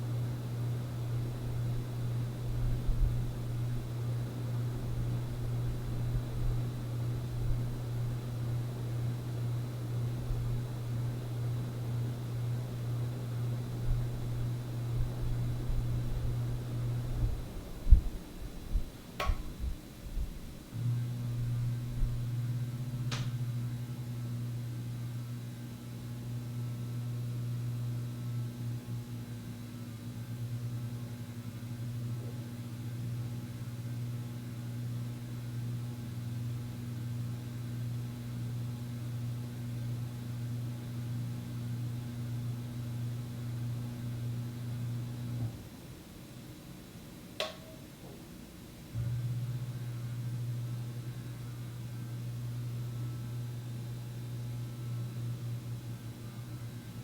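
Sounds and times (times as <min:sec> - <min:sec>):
ceiling fan motor hum: 0:00.0 - 0:57.0.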